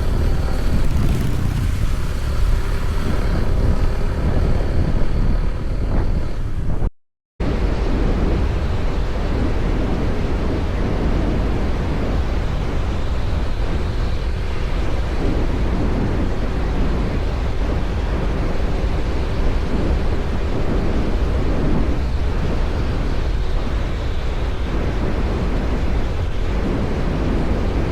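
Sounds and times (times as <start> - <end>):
faint engine tone: 0.0 - 6.5
wind rumble on microphone: 0.0 - 27.9.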